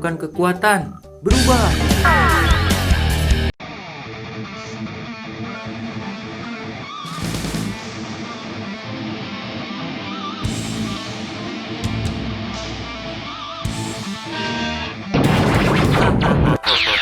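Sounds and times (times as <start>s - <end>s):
rock music with electric guitar: 1.3s - 17.0s
loud crashing burst: 7.1s - 8.0s, 15.2s - 16.6s.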